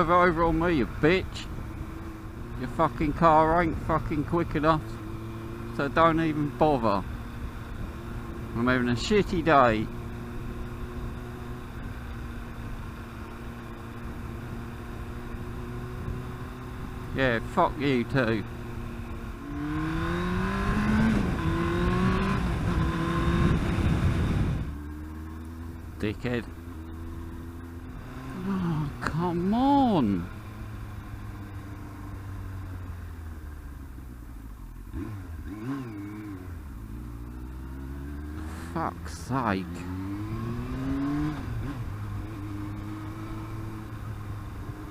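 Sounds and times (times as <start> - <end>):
motorcycle engine running steadily: 0.0 - 44.9
road or wind noise hiss: 18.5 - 26.0.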